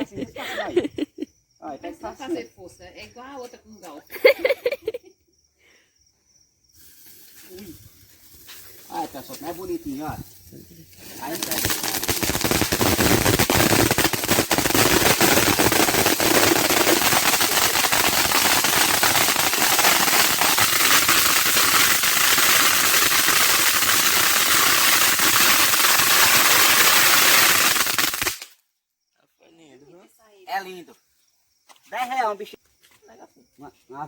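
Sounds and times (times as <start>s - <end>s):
fountain firework crackling hiss: 6.8s - 28.6s.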